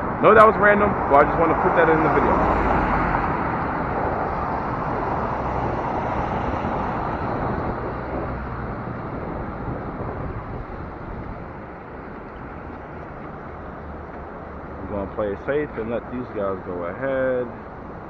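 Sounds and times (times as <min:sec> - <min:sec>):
city traffic noise: 0:00.0 - 0:18.0
rushing wind: 0:00.0 - 0:18.0.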